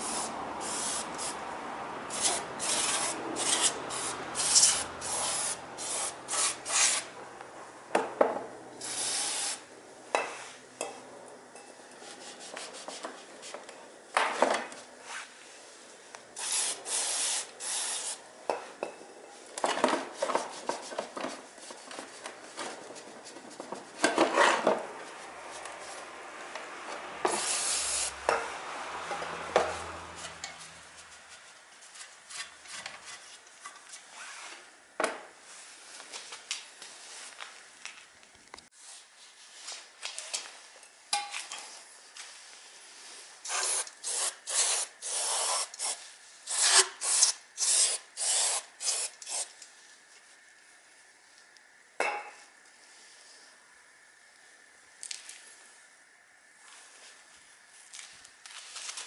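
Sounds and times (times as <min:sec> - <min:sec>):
scraping and rubbing on metal: 0:02.2 - 0:03.8.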